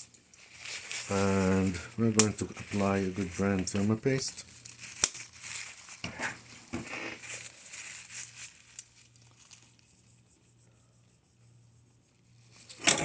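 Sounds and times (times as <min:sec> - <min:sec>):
paper crinkling and rustling: 0:00.0 - 0:10.4.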